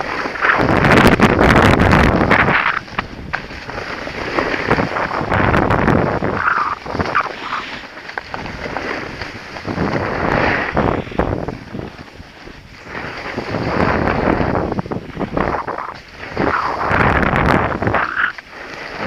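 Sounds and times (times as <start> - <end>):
wind buffeting microphone: 0.0 - 19.0
skis hissing on snow: 6.4 - 8.0, 8.6 - 11.4.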